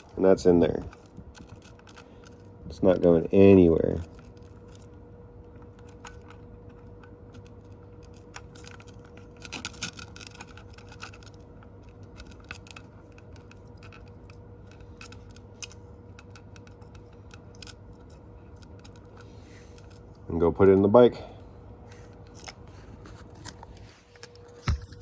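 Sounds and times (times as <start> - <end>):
clicks and rattles of plastic parts: 0.0 - 3.2, 3.8 - 5.0, 5.6 - 20.2
faint steady hum: 0.0 - 25.0.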